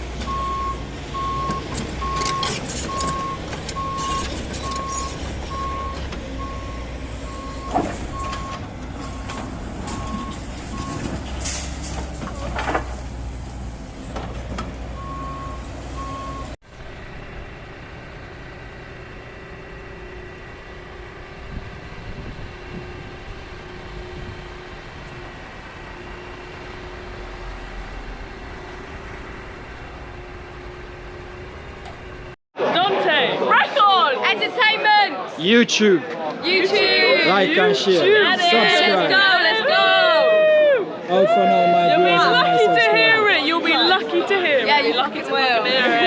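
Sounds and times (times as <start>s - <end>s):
truck reversing alarm beeping: 0.0s - 11.8s, 14.9s - 16.6s
diesel engine rumble: 0.0s - 32.4s.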